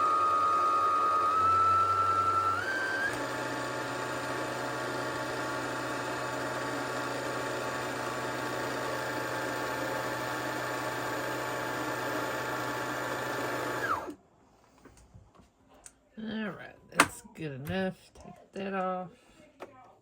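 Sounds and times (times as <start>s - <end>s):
sewing machine motor whining: 0.0s - 14.2s.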